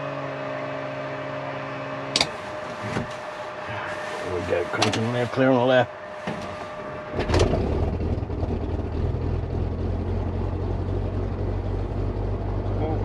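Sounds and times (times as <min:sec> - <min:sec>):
aircraft engine starting and idling: 0:00.0 - 0:13.0.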